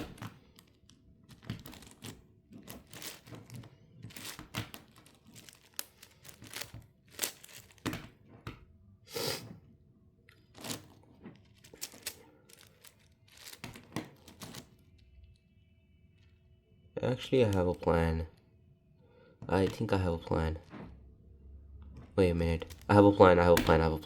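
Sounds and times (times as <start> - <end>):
puzzle cube clicking and scraping: 0.0 - 8.0, 10.4 - 14.8.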